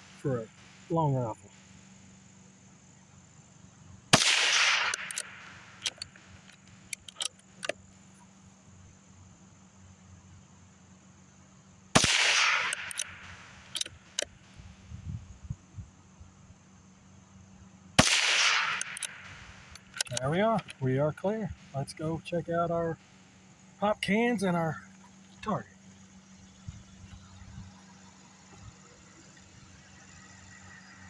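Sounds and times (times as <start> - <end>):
rifle shots with echo: 4.1 - 6.2, 12.0 - 14.2, 18.0 - 20.7
rifle bolt clicks: 4.2 - 7.8, 12.0 - 14.4, 18.0 - 20.8.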